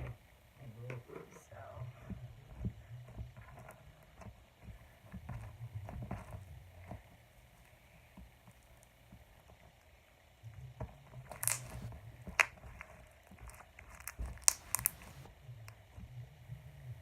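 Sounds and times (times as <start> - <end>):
slime popping: 11.3 - 11.9, 14.0 - 15.3
foam bead slime squishing: 11.3 - 12.8, 13.4 - 15.3.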